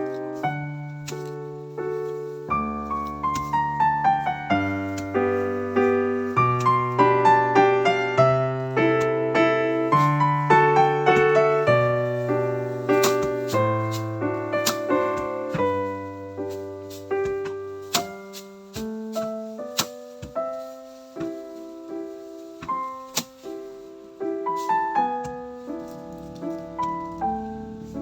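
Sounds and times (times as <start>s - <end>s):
solo piano music: 0.0s - 28.0s.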